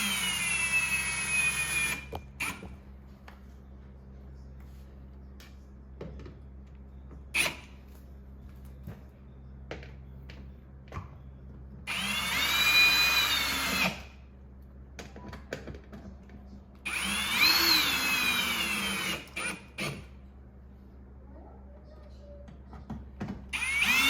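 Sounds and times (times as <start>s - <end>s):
cordless drill whine: 0.0s - 2.7s, 11.9s - 14.1s, 16.9s - 20.0s, 23.5s - 24.0s.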